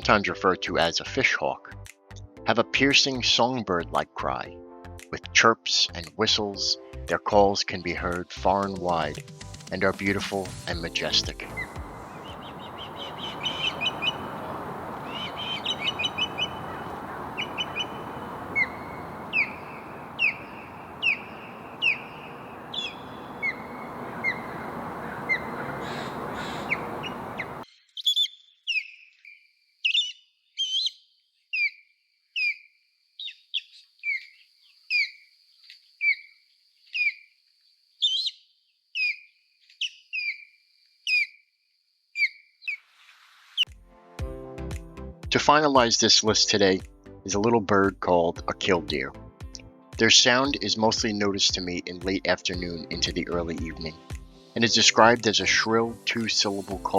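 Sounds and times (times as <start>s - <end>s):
osprey whistled chirps: 11.4s - 31.0s, 31.6s - 35.2s, 36.0s - 37.3s, 39.0s - 41.4s.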